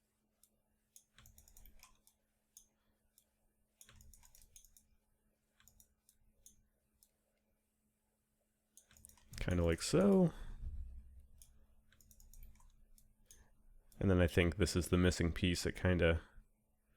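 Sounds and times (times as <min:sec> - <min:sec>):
faint electrical hum: 0:00.0 - 0:16.9
computer mouse clicks: 0:00.4 - 0:04.9, 0:05.6 - 0:07.2, 0:08.8 - 0:10.1, 0:11.4 - 0:14.0.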